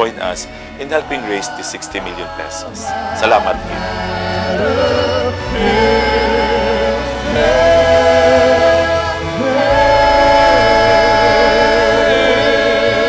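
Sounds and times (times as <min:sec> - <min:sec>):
choir singing a hymn: 0:00.0 - 0:13.0
steady bass accompaniment: 0:00.0 - 0:13.0.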